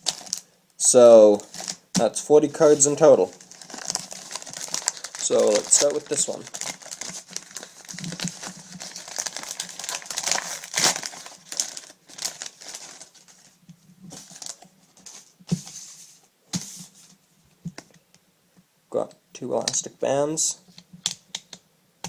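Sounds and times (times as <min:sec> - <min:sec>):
wrapping crinkling: 0:00.0 - 0:00.5, 0:01.3 - 0:15.6.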